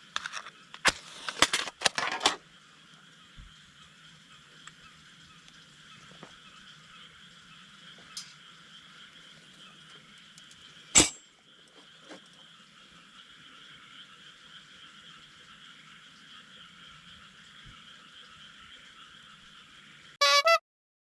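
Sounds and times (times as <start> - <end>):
frogs calling: 2.4 - 20.5
sharp metallic clink: 11.0 - 11.3
brief pitched tone: 20.2 - 20.6.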